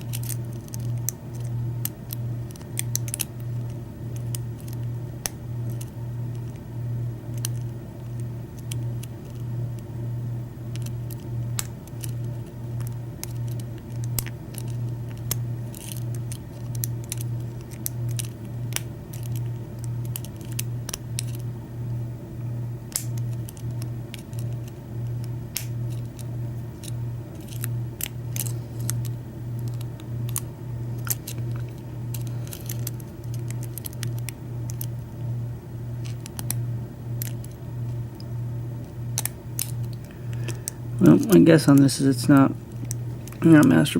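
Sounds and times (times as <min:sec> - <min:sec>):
pulsing low hum: 0:00.0 - 0:43.9.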